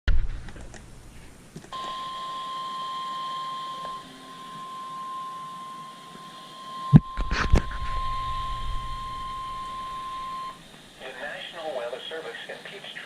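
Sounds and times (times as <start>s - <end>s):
faint radio hiss: 0.1s - 13.0s
high steady alarm beep: 1.7s - 10.7s.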